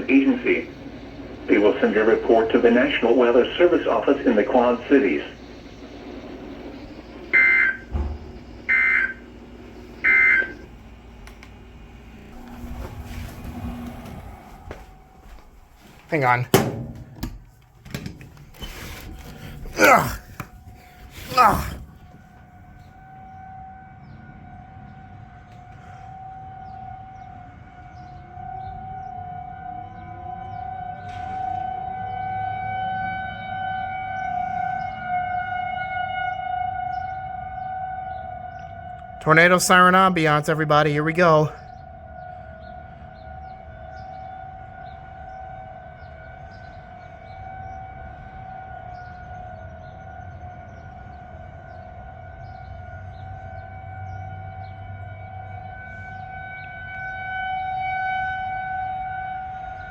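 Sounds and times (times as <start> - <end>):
tornado warning siren: 0.0 - 59.9
lower siren tone rising in pitch: 4.6 - 16.0, 26.1 - 39.2, 42.1 - 59.9.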